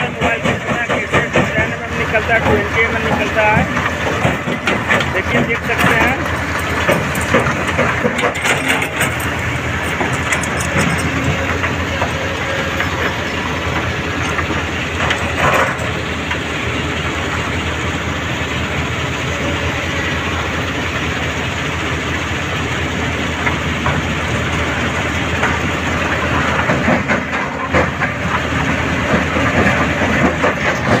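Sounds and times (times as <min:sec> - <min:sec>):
stone crusher running: 0:00.0 - 0:31.0
crushed rock rattling: 0:03.4 - 0:12.2.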